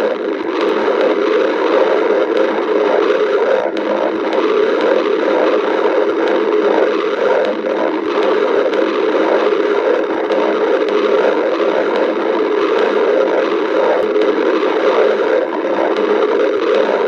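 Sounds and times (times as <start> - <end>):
stomach growling: 0.0 - 17.0.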